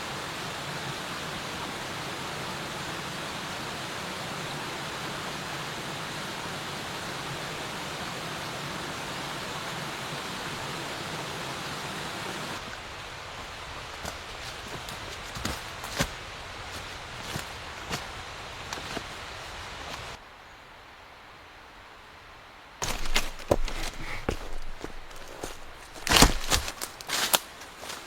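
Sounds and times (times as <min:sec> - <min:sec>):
quiet ambience: 0:12.5 - 0:28.0.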